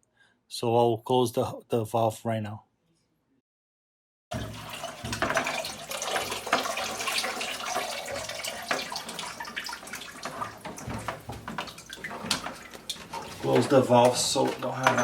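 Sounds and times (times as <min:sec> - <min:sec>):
water running and splashing: 0:04.3 - 0:15.0
clicks and knocks of handling: 0:10.2 - 0:15.0.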